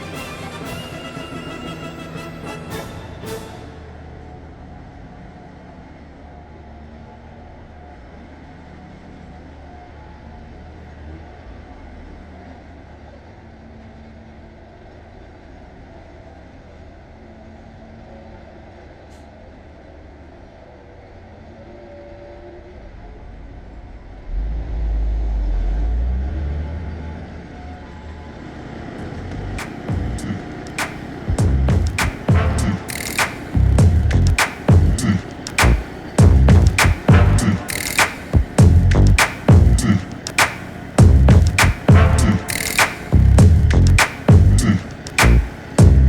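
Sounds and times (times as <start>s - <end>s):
loud deep rumble: 24.0s - 26.7s, 29.3s - 30.5s, 31.3s - 32.9s, 33.5s - 37.7s, 38.3s - 40.2s, 41.0s - 42.5s, 43.1s - 46.0s
heavy vehicle engine running: 29.0s - 46.0s.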